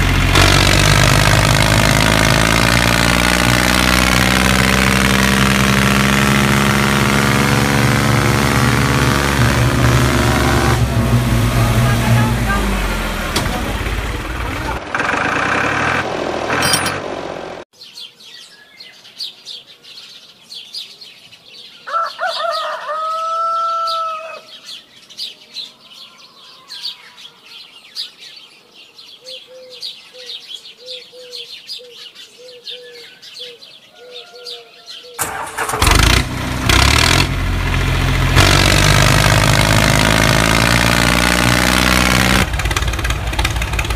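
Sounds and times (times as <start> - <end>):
small engine running: 0.0 - 17.6, 35.2 - 43.9
birds chirping: 17.7 - 35.7.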